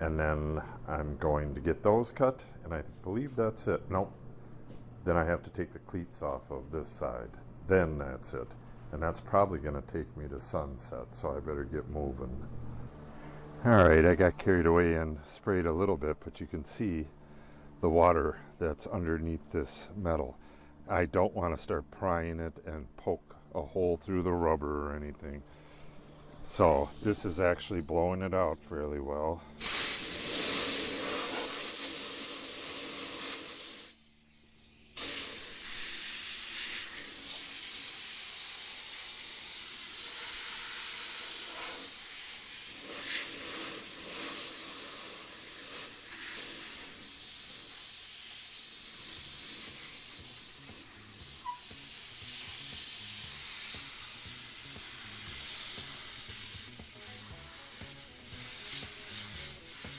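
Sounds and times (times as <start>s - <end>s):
compressed air hissing from nozzle: 25.5s - 27.5s, 29.4s - 59.9s.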